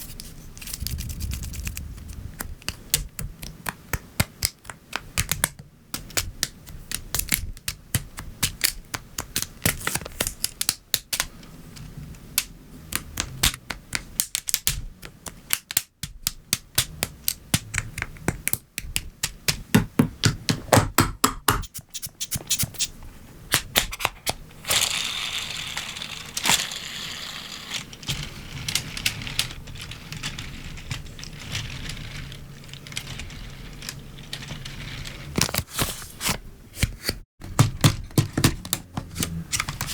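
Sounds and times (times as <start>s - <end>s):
plastic pieces snapping together: 2.4s - 11.3s, 12.3s - 22.6s
plastic rustling and scraping: 24.8s - 36.5s.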